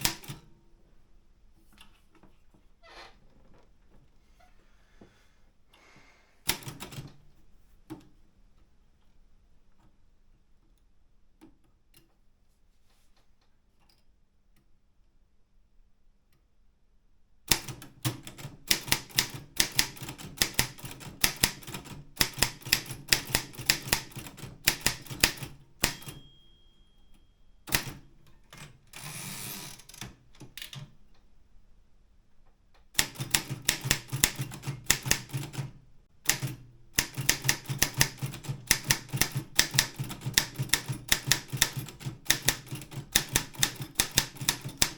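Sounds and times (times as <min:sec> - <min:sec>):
typewriter key strikes: 0:17.5 - 0:26.4, 0:27.7 - 0:30.9, 0:33.0 - 0:35.7, 0:36.3 - 0:44.9
typewriter margin bell ringing: 0:25.8 - 0:28.0, 0:28.9 - 0:30.0
typewriter carriage sliding back: 0:28.9 - 0:30.6.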